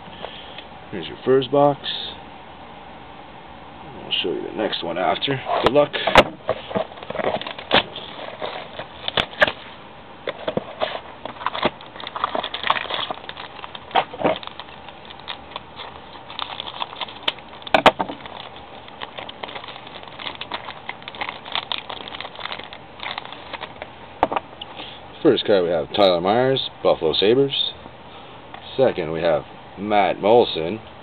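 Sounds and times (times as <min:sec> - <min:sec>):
rustling cardboard and wrapper: 0:05.4 - 0:24.4.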